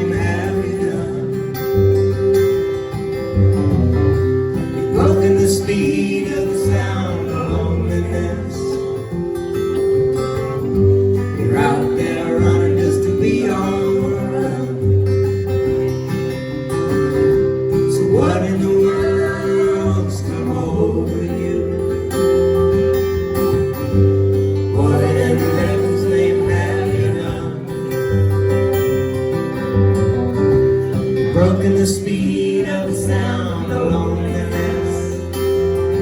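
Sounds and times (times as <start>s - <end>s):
acoustic guitars strumming and picking: 0.0s - 36.0s.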